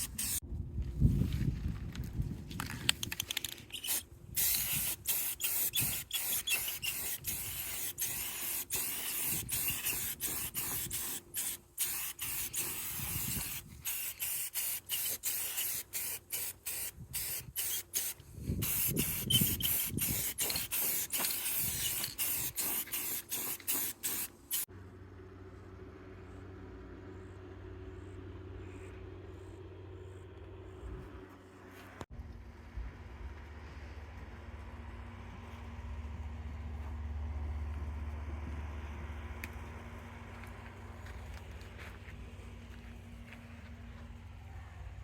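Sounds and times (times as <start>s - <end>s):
hissing spray spurts: 0.0s - 0.4s, 3.7s - 24.7s
steady low hum: 0.0s - 45.0s.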